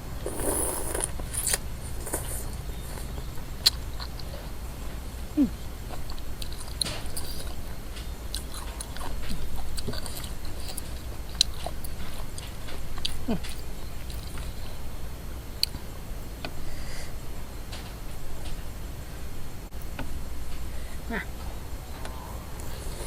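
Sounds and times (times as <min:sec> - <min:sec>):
mouth sounds: 0:00.0 - 0:03.8
person chewing and crunching: 0:00.1 - 0:04.5, 0:08.3 - 0:14.5.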